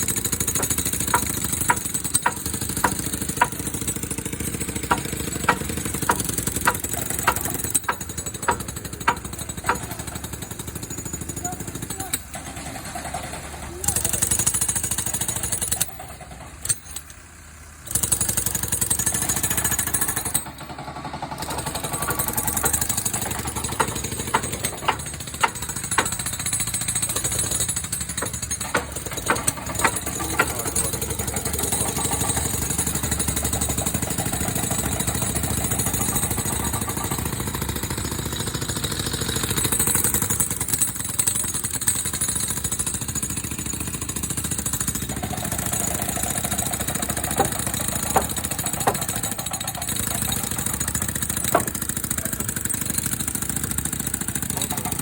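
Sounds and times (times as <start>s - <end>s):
construction machinery rattling: 0.0s - 55.0s
sharp knocks: 0.6s - 3.6s, 4.9s - 10.2s, 21.3s - 31.7s, 47.0s - 50.8s, 51.4s - 51.9s.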